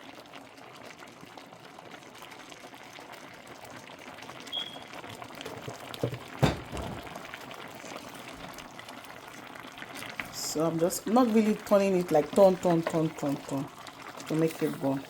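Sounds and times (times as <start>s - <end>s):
porridge bubbling in a pot: 0.0s - 15.0s
sharp knocks: 6.0s - 7.1s.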